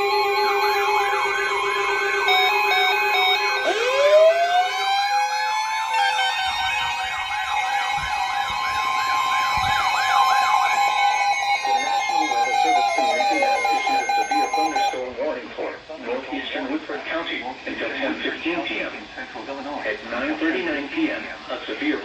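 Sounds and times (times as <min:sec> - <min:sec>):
siren winding up: 0:00.0 - 0:15.0
steady alarm tones: 0:00.0 - 0:15.0
up-and-down siren sweep: 0:00.0 - 0:15.0.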